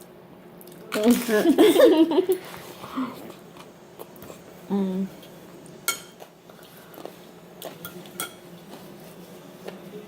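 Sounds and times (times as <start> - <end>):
utensils clinking against dishes: 5.9 - 6.2, 7.6 - 8.5.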